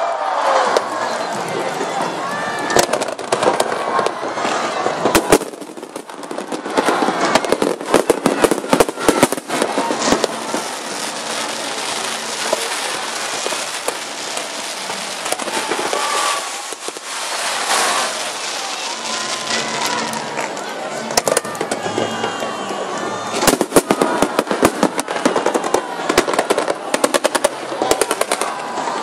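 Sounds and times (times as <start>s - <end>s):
fireworks bangs and crackles: 0.2s - 29.0s.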